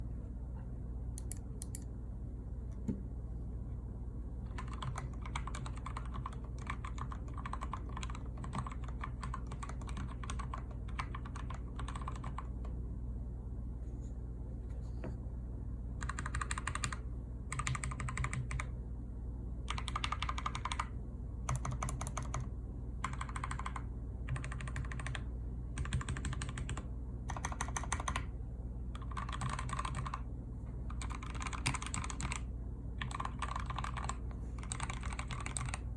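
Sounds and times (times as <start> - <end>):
low steady hum: 0.0 - 35.9
mechanical keyboard typing: 4.5 - 12.7, 16.0 - 18.7, 19.7 - 20.9, 21.5 - 25.2, 25.8 - 28.3, 29.0 - 30.2, 30.9 - 35.9.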